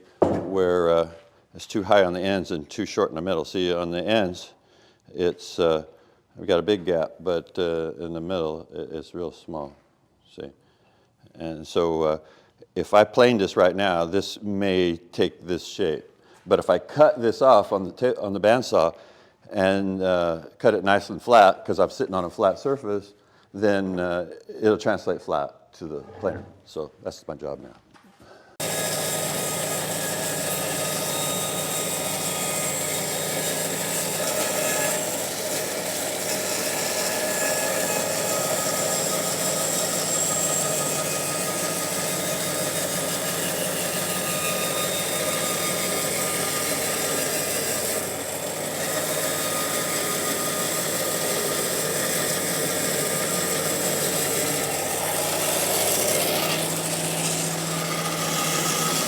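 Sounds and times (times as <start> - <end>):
bandsaw cutting a board: 28.6 - 59.0.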